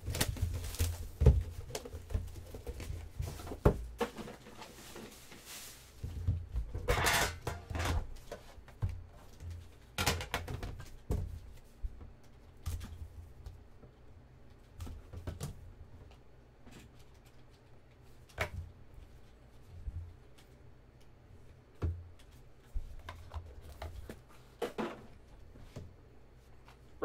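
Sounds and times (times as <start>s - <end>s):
cards and plastic holders rustling: 0.0s - 13.0s, 22.1s - 25.9s.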